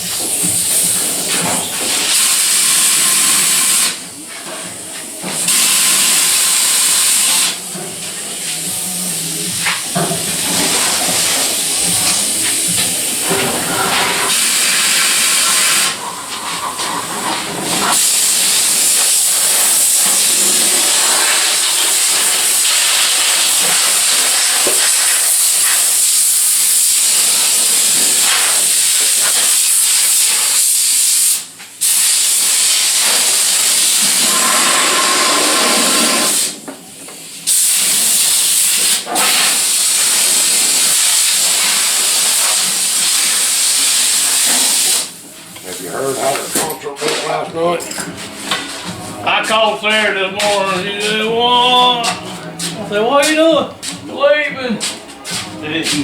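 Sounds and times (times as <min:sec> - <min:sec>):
compressed-air tool hissing: 0:00.0 - 0:04.0, 0:05.4 - 0:07.7, 0:08.4 - 0:36.6, 0:37.2 - 0:46.8.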